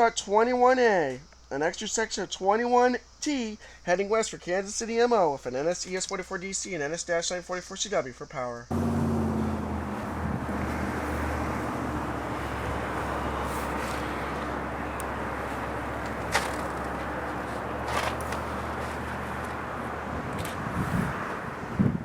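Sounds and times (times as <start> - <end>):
diesel locomotive engine drone: 8.7 - 22.0
freight train rumble: 8.7 - 22.0.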